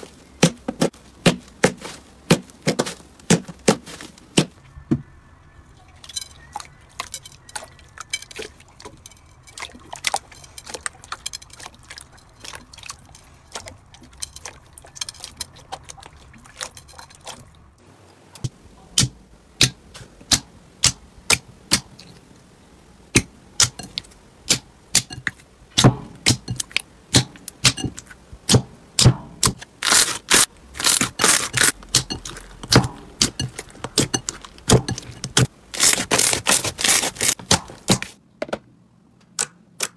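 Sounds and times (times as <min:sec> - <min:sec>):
slime crackling and popping: 0:29.5 - 0:37.5.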